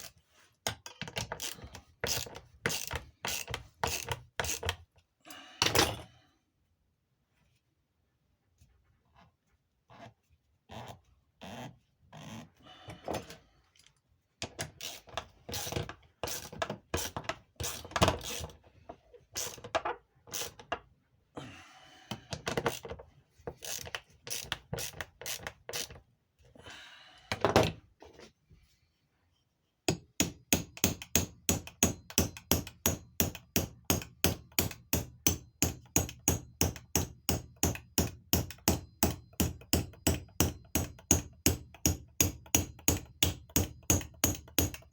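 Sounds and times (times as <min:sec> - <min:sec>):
hammer tapping on metal: 0:29.9 - 0:44.9.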